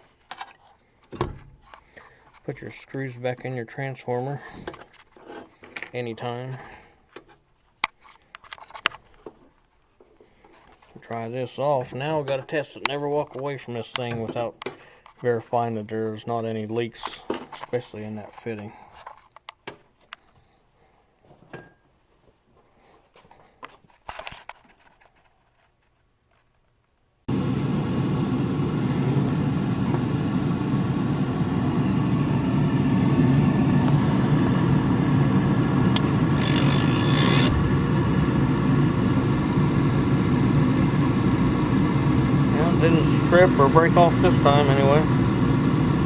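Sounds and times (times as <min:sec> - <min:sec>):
oil burner roaring: 0:27.3 - 0:46.0.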